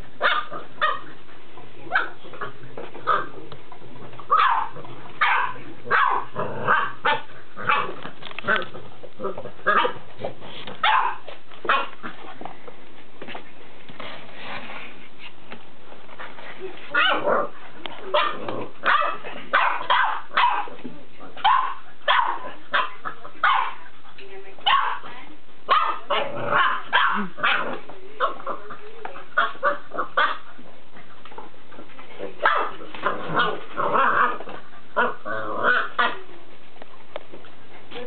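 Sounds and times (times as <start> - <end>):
dog barking: 0.2 - 1.0, 1.9 - 2.2, 4.3 - 8.0, 9.7 - 10.0, 10.8 - 11.9, 17.0 - 17.3, 18.1 - 20.7, 21.4 - 23.8, 24.7 - 25.0, 25.7 - 27.7, 32.4 - 32.7.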